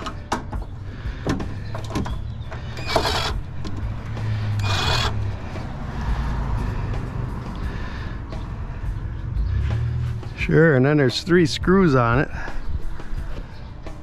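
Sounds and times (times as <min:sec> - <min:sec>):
metal scraping rasps: 0:02.8 - 0:03.4, 0:04.6 - 0:05.2.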